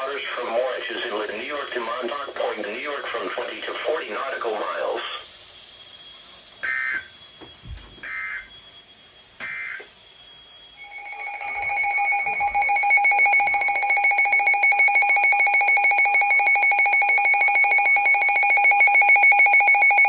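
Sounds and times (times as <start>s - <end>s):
pulsing electronic alert alarm: 5.2s - 20.0s.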